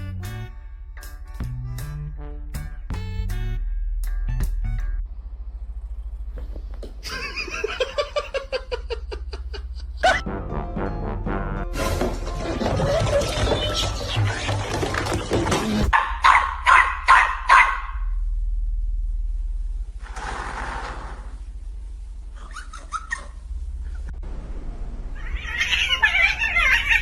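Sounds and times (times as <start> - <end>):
cat meowing: 25.2 - 27.0.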